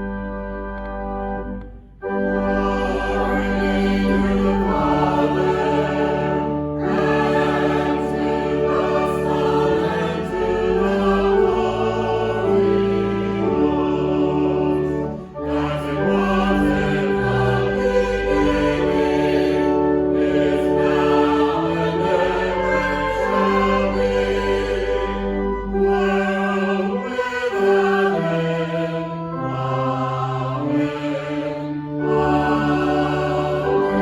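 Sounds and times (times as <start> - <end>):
choir singing slow chords: 0.0 - 34.0
musical accompaniment: 0.0 - 34.0.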